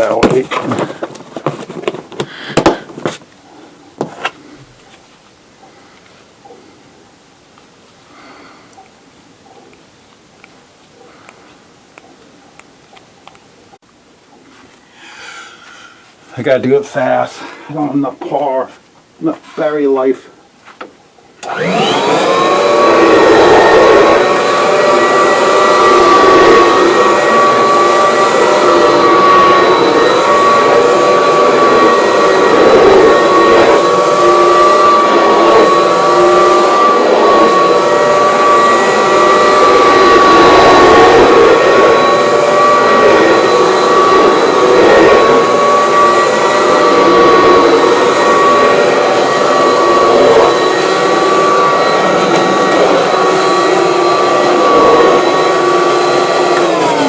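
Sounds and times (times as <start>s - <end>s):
vacuum cleaner running: 0.0s - 3.2s, 21.4s - 57.0s.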